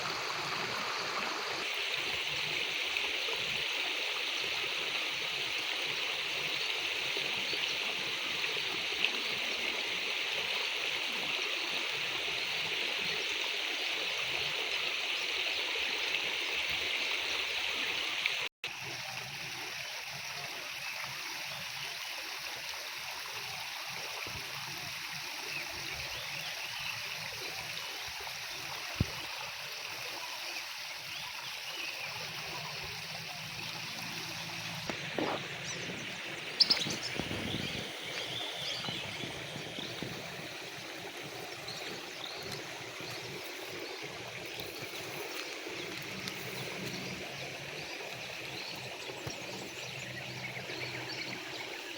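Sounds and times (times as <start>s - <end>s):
flowing water rushing: 0.0s - 51.9s.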